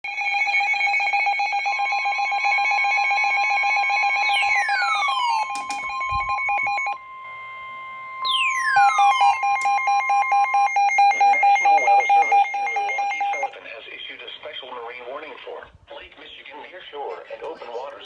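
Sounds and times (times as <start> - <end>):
rapidly pulsing beep: 4.0 - 7.0, 8.2 - 13.6
steady electronic tones: 4.2 - 13.6.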